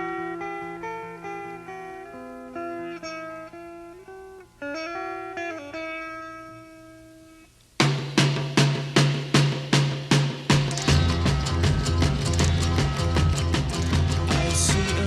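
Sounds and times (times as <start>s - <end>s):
solo guitar picking melody: 0.0s - 7.6s, 10.7s - 15.0s.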